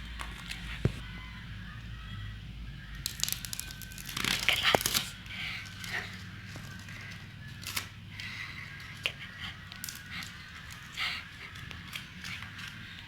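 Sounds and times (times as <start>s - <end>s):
dried clay crackling and crunching: 0.0s - 1.2s, 2.8s - 13.0s
clay snapping: 3.0s - 12.8s.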